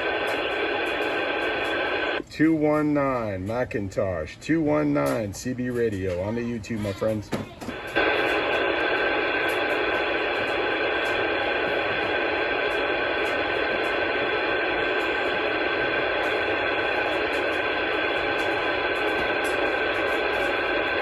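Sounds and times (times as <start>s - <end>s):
radio static hiss: 0.0s - 21.0s.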